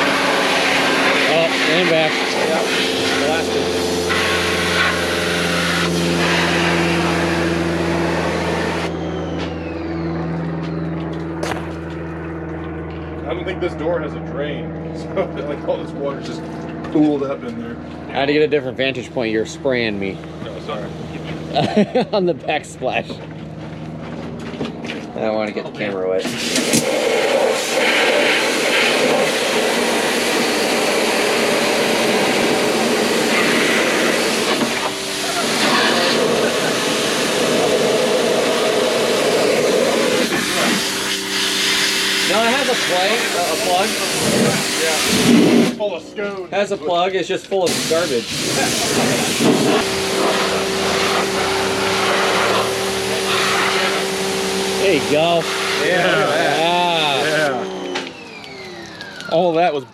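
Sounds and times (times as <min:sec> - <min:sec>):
pressure washer humming: 0:00.0 - 0:59.9
water spray hissing: 0:26.3 - 0:45.8, 0:47.7 - 0:54.7.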